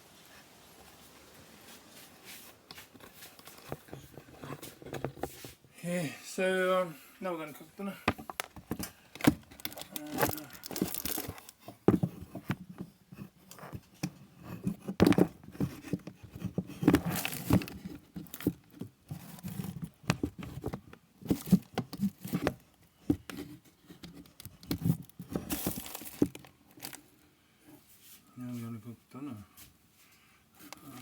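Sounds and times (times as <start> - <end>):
handling knocks and bumps: 2.9 - 5.6, 8.0 - 27.0
packaging crinkling: 8.2 - 11.6, 17.0 - 19.9, 24.2 - 27.0.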